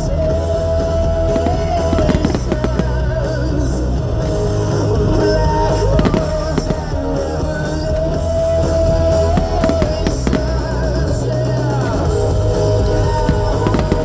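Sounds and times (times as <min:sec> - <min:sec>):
rock music with singing: 0:00.0 - 0:14.0
firework bangs: 0:01.2 - 0:14.0.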